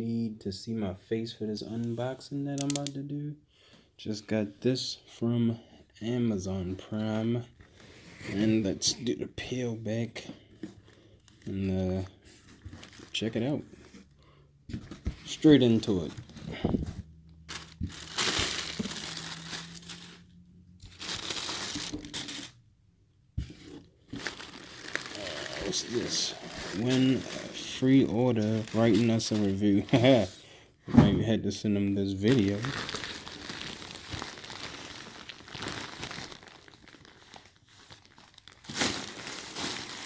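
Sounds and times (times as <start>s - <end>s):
packaging rustling and crinkling: 10.5s - 14.1s, 14.7s - 22.6s, 23.4s - 30.3s, 32.1s - 40.0s.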